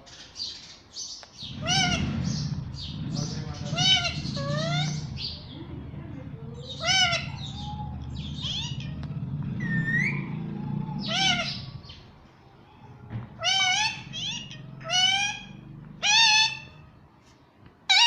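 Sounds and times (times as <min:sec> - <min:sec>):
parrot calls: 0:01.5 - 0:05.6, 0:06.5 - 0:12.1, 0:13.4 - 0:17.0
parrot rising whistle: 0:09.6 - 0:11.7.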